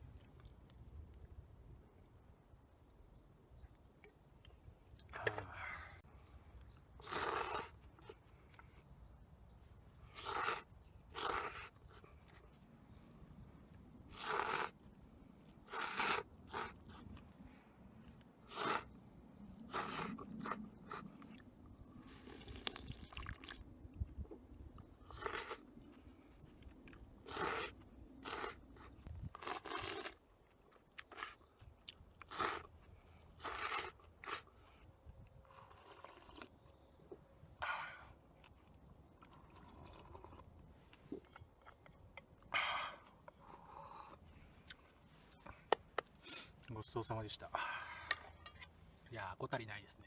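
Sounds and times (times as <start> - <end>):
faint bird chirping: 2.0 - 14.4, 16.7 - 22.9
person slurping noodles: 7.0 - 7.8, 10.2 - 11.8, 14.1 - 14.8, 15.6 - 16.9, 18.5 - 18.9, 19.7 - 21.1, 27.2 - 28.6, 29.3 - 30.2, 33.4 - 34.4.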